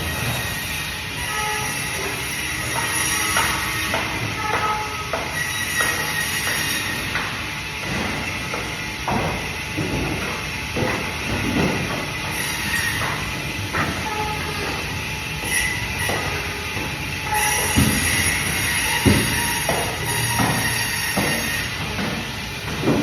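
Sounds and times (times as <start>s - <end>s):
band saw whining: 12.2s - 22.1s.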